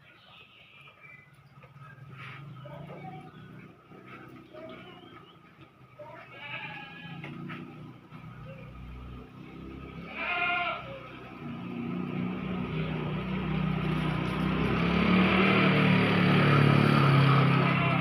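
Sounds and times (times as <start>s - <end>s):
vehicle engine approaching: 0.0s - 18.0s
short bleat: 6.3s - 7.3s, 10.1s - 10.9s.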